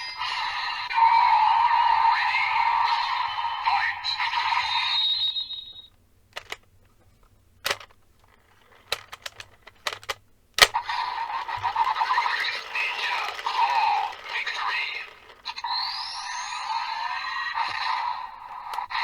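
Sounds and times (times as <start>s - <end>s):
toy electronic sound effects and music: 0.1s - 6.6s, 8.6s - 19.0s
sharp plastic clicks: 6.3s - 16.2s, 17.6s - 19.0s.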